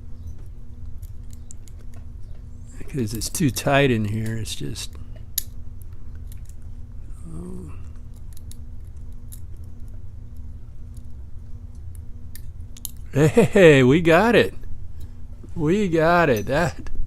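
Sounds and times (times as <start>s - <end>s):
steady low hum: 0.0s - 17.0s
person humming: 7.1s - 7.9s.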